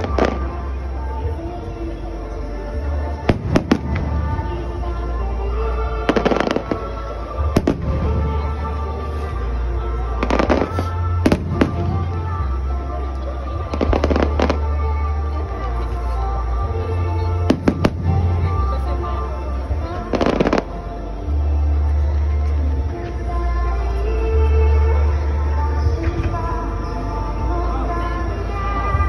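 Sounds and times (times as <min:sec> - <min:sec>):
music playing: 0:00.0 - 0:29.0
fireworks bursting: 0:03.2 - 0:04.6, 0:06.0 - 0:09.4, 0:10.2 - 0:12.5.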